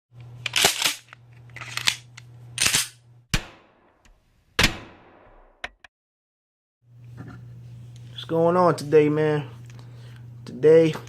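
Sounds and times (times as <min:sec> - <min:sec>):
gunshot-like cracks with echo: 0:04.6 - 0:05.3.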